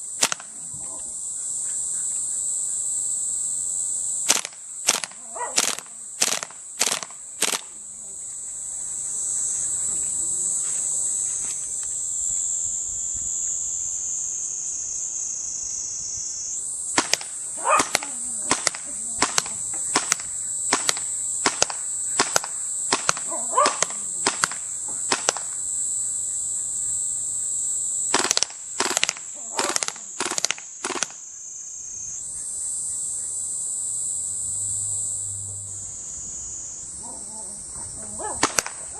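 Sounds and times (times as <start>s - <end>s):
airsoft gun shots: 0.2s - 0.5s, 4.2s - 7.7s, 17.0s - 25.6s, 28.1s - 31.2s, 38.4s - 38.8s.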